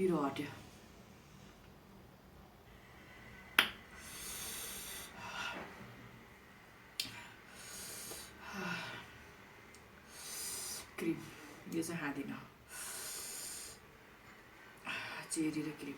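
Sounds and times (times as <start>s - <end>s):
heavy breathing through mouth: 3.9s - 5.8s, 7.0s - 9.2s, 10.0s - 11.7s, 12.7s - 14.0s.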